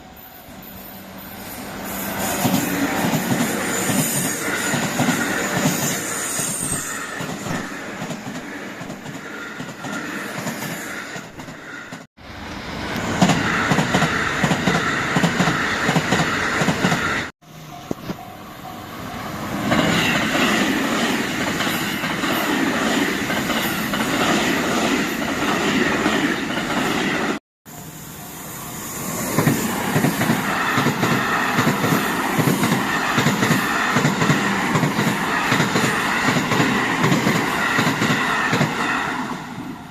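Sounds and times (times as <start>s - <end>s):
train rail noise: 0.0s - 39.9s
crossing warning bell ringing: 17.4s - 19.6s, 27.7s - 29.2s.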